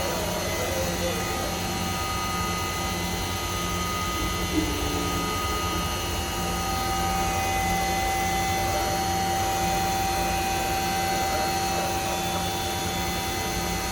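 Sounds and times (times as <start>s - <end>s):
pulsing low hum: 0.0s - 10.8s
machine spindle whine: 0.0s - 13.9s.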